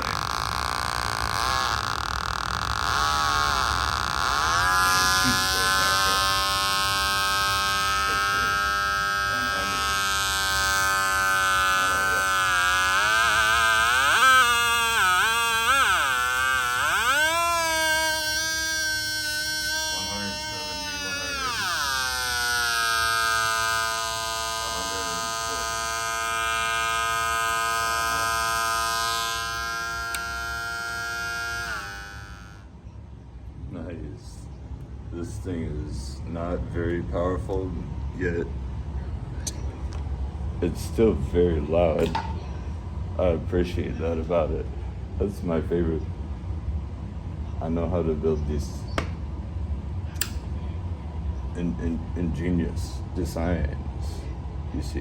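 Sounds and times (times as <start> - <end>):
electronic siren tone: 1.6 - 32.6.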